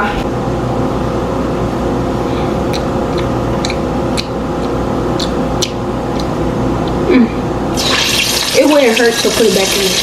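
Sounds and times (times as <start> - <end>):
steady hum: 0.0 - 10.0
chicken frying in hot oil: 7.8 - 10.0.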